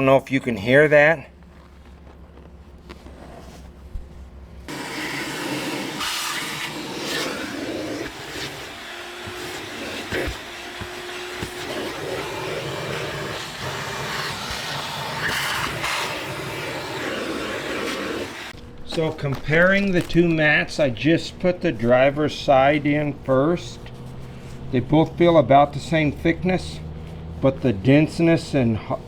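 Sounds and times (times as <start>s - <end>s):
car mat rustling and scraping: 1.5s - 18.5s.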